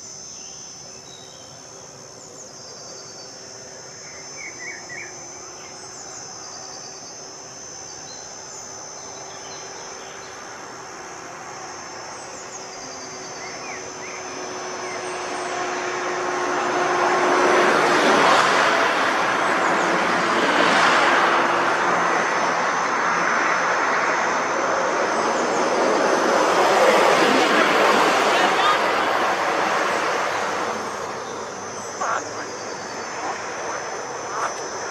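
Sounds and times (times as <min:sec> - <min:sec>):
insects buzzing: 0:00.0 - 0:34.9
vehicle engine and road noise: 0:14.0 - 0:34.9.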